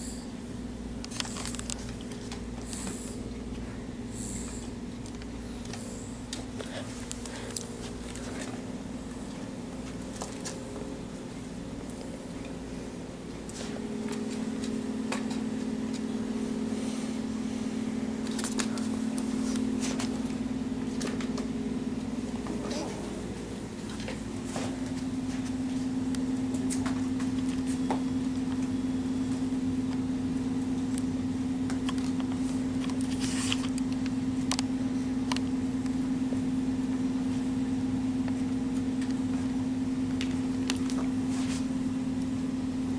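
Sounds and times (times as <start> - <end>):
steady low hum: 0.0 - 42.9
pet snoring: 2.6 - 3.3, 4.1 - 4.8.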